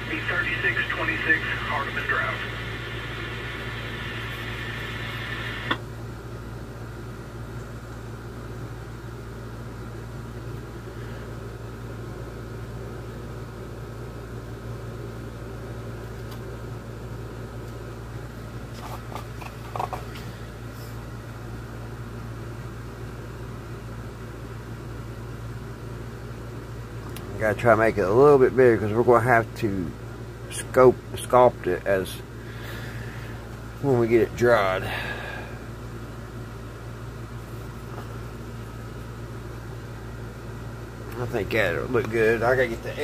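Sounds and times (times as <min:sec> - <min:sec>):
scanner radio hiss: 0:00.0 - 0:05.8, 0:27.4 - 0:36.4, 0:37.0 - 0:43.0
low electrical hum: 0:00.0 - 0:43.0.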